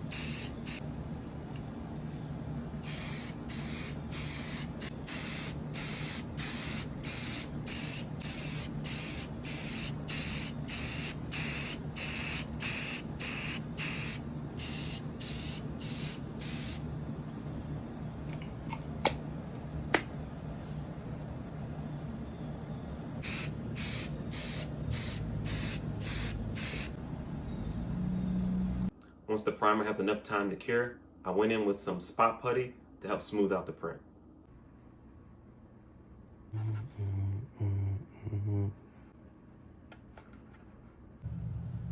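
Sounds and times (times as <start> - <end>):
aerosol can spraying: 0.0 - 0.8, 2.8 - 16.8, 23.2 - 27.0.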